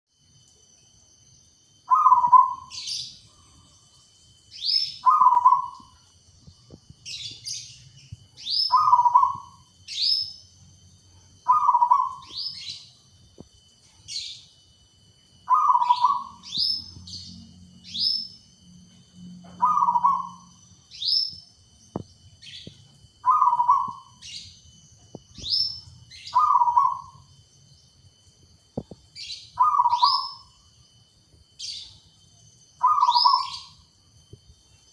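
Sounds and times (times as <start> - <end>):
bird chirping high: 1.8 - 6.1, 6.7 - 10.5, 11.4 - 13.1, 15.4 - 18.4, 19.3 - 27.4, 29.1 - 30.7, 32.8 - 33.9
dove cooing: 1.9 - 2.7, 5.0 - 6.0, 8.7 - 9.6, 11.5 - 12.4, 15.5 - 16.5, 19.5 - 20.5, 23.2 - 24.2, 26.3 - 27.2, 29.6 - 30.4, 32.8 - 33.7.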